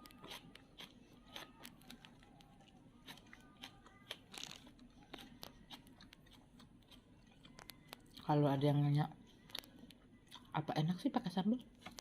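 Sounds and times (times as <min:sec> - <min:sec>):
small clicks and crackles: 0:00.0 - 0:08.3, 0:09.3 - 0:10.1, 0:11.8 - 0:12.0
chewing and crunching food: 0:00.0 - 0:12.0.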